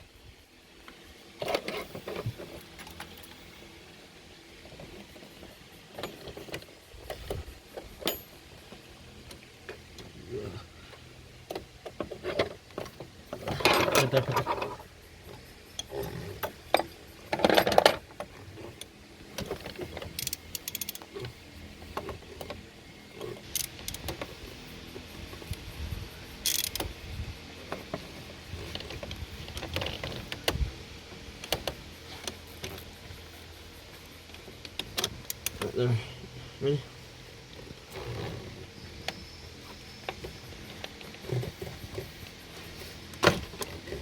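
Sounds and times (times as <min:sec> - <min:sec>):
hand tools clinking on metal: 0:05.9 - 0:08.8, 0:13.3 - 0:14.9
ratchet clicks: 0:11.4 - 0:35.8
tools clattering: 0:11.9 - 0:18.8.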